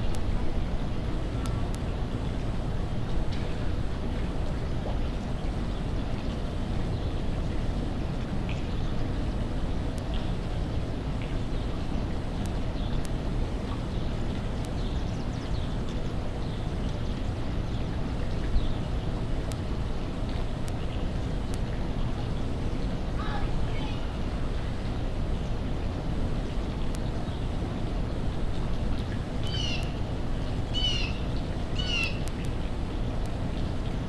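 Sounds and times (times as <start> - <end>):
light clicks: 32.0 - 33.4.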